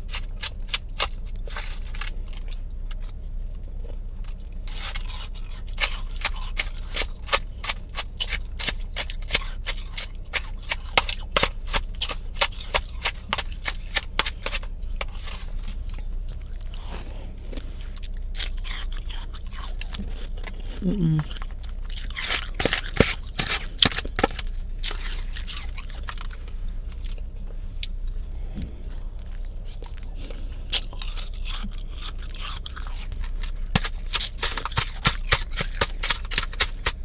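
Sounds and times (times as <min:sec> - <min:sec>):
crunching frost being chewed: 0:00.0 - 0:37.0
steady low hum: 0:00.0 - 0:37.0.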